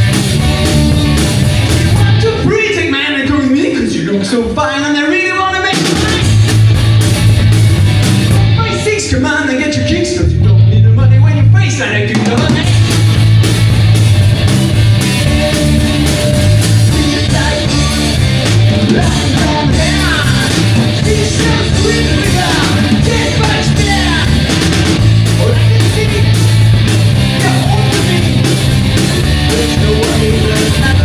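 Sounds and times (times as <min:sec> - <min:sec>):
rock band playing: 0:00.0 - 0:03.6, 0:05.4 - 0:31.0.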